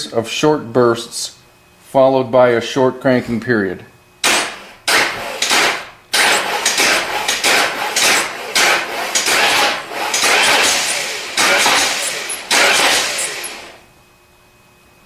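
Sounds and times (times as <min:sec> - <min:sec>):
starter motor cranking engine: 0:04.2 - 0:13.8.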